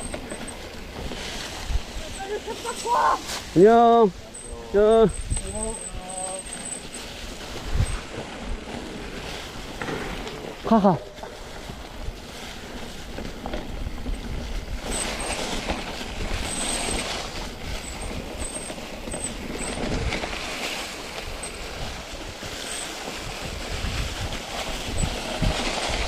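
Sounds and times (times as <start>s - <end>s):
bike rattling: 0.0s - 26.0s
bike tyres on dirt trail: 0.0s - 26.0s
high squeaks: 1.6s - 8.0s, 14.8s - 15.6s, 16.3s - 20.3s
wind on microphone: 4.1s - 6.1s, 21.2s - 26.0s.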